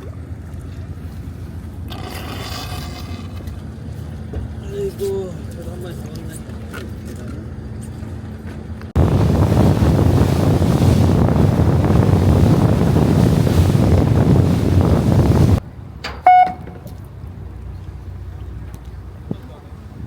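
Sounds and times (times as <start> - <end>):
wind buffeting microphone: 8.9 - 16.0
short high beep: 16.2 - 16.8.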